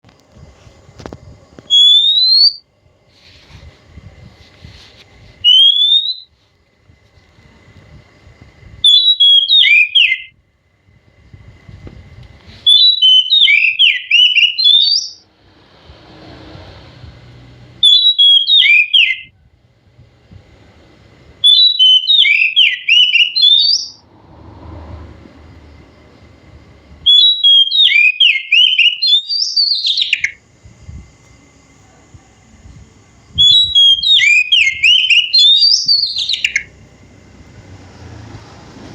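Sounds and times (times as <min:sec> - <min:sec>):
bird singing warbling phrases: 0:12.7 - 0:15.2, 0:21.4 - 0:24.0, 0:27.1 - 0:30.4, 0:33.4 - 0:36.7.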